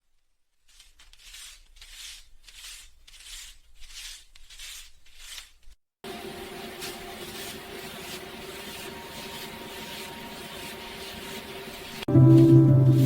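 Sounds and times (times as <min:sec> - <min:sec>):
banknotes rustling: 0:00.5 - 0:13.0
mechanical hum with hiss: 0:06.1 - 0:13.0.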